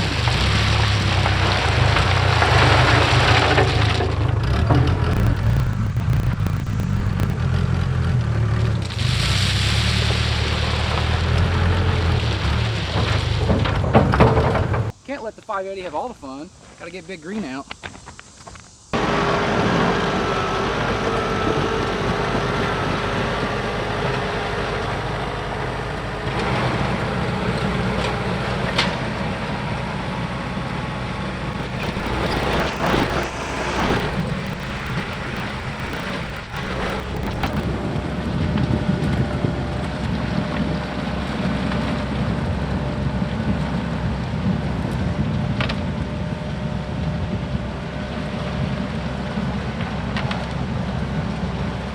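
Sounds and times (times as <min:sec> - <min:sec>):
tractor diesel engine running: 0:00.0 - 0:14.9, 0:19.0 - 0:43.2.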